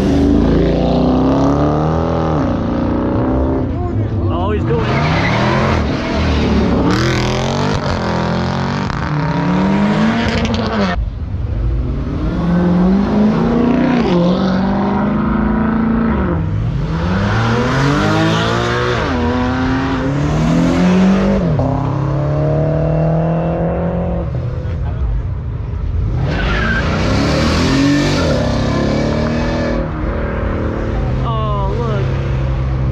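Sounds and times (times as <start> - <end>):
car engine revving: 0.0 - 24.8, 25.8 - 32.9
tires squealing: 4.6 - 8.0, 26.0 - 30.1.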